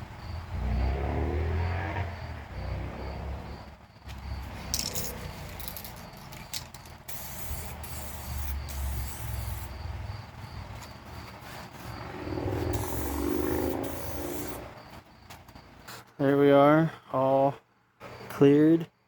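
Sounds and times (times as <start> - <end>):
crickets chirping: 0.0 - 19.0
spray gun hissing: 7.0 - 9.8, 12.6 - 14.7.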